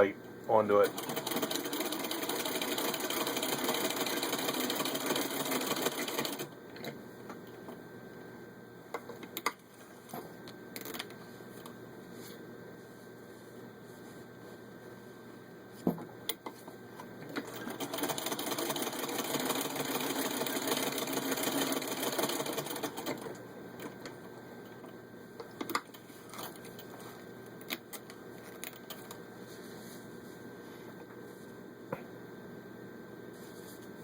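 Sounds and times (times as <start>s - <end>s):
sewing machine clatter: 0.8s - 6.5s, 17.4s - 24.0s.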